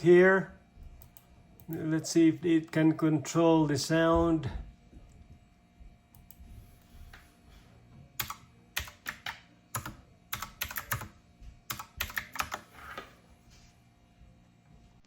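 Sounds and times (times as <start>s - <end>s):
keyboard keys clicking: 8.2s - 11.1s, 11.7s - 12.7s.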